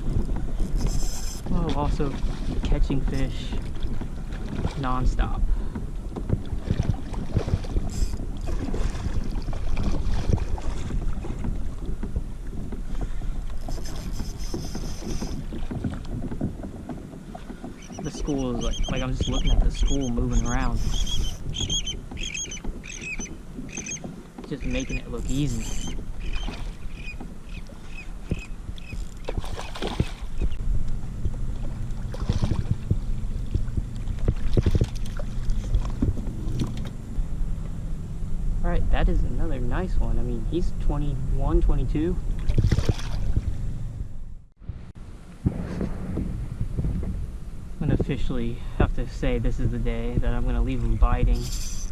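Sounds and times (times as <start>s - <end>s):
water sloshing: 0.0s - 37.9s, 39.1s - 43.9s
wind rumbling on microphone: 0.0s - 51.9s
knocks around a kayak: 14.5s - 18.2s.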